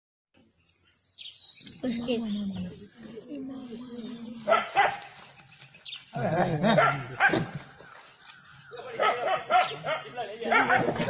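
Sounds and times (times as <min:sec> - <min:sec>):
dogs barking and yelping: 0:04.4 - 0:05.2, 0:06.2 - 0:07.9, 0:08.8 - 0:11.0.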